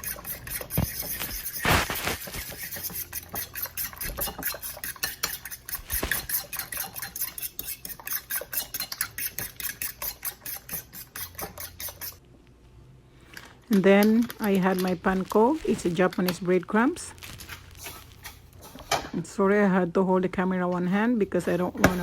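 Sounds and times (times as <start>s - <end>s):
eggs beaten in bowl: 0.0s - 12.2s, 13.7s - 16.8s, 21.4s - 22.0s.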